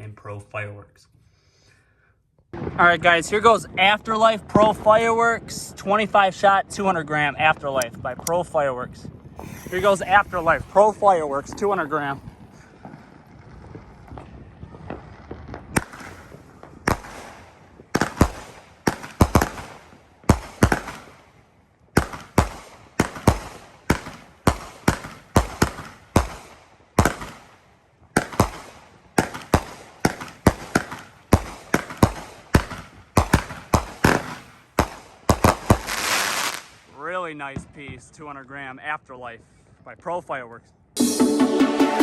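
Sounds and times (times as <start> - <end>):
crackling firework bursts: 6.8 - 38.0
firework shots banging: 7.0 - 36.9.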